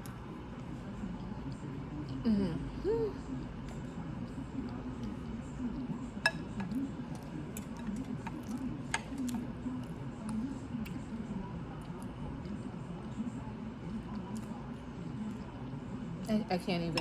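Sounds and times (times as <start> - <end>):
low steady hum: 0.0 - 17.0
chewing: 6.4 - 11.1, 14.0 - 14.7.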